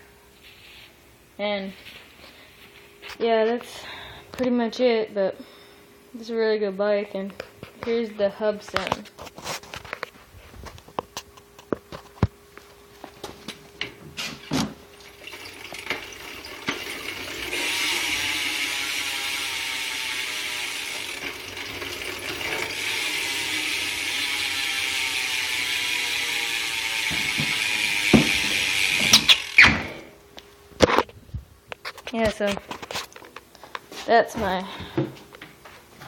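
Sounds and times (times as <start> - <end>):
bike hub ratcheting clicks: 16.6 - 29.8.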